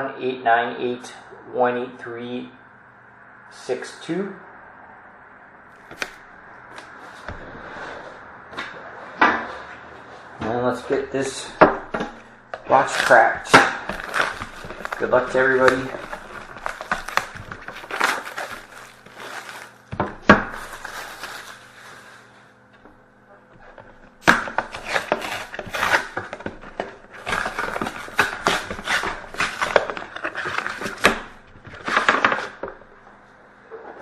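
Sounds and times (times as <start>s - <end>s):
cardboard scraping: 5.8s - 22.4s, 23.6s - 32.8s
plastic wrap crinkling and tearing: 12.6s - 22.4s, 24.2s - 32.6s.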